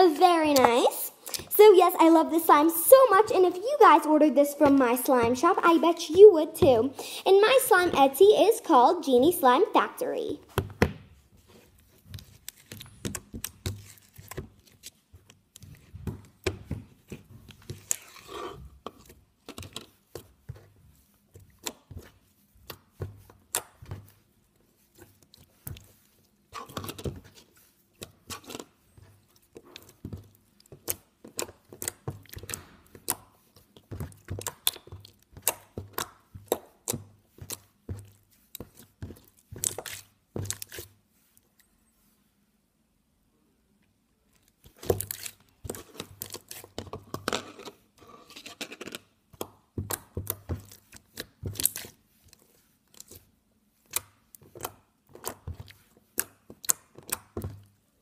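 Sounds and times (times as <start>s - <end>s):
slime clicking and popping: 34.1s - 37.7s.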